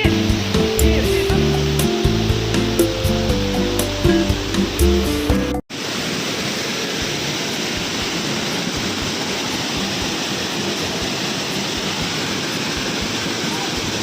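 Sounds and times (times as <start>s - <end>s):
music: 0.0s - 5.6s
waterfall rushing: 0.0s - 14.0s.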